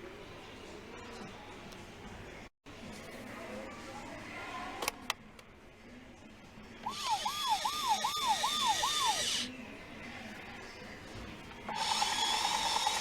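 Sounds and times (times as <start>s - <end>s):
hissing rotor noise: 6.9s - 9.5s, 11.8s - 13.0s
toy wailing siren: 6.9s - 9.5s.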